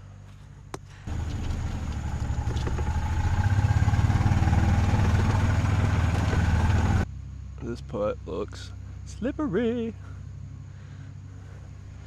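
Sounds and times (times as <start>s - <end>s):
golf cart engine running: 1.1s - 7.1s.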